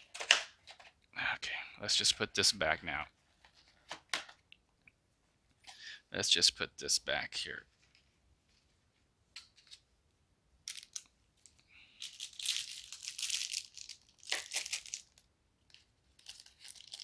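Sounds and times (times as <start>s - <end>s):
packing material rustling: 12.0s - 15.2s, 16.1s - 17.0s.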